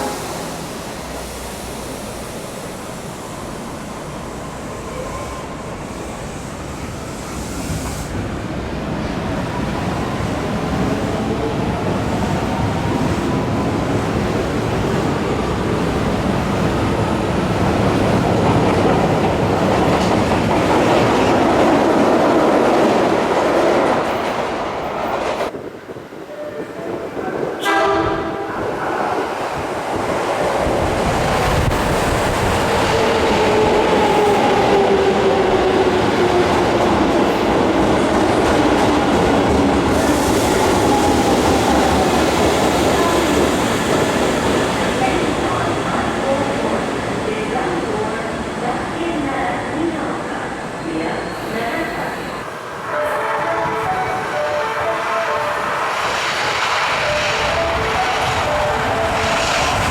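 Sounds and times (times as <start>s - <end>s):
train horn: 0.0s - 0.7s, 26.3s - 28.8s, 52.9s - 55.9s
subway train noise: 0.0s - 59.9s.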